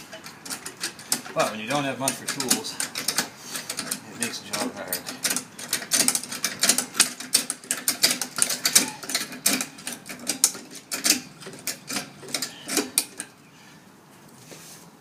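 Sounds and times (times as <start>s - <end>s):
car jack ratcheting clicks: 0.0s - 13.4s.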